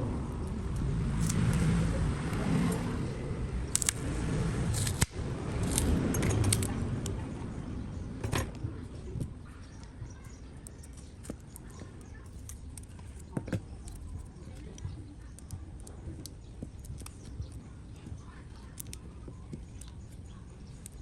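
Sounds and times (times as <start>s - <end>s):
low background rumble: 0.0s - 21.0s
small tools clicking and clinking: 4.8s - 6.8s.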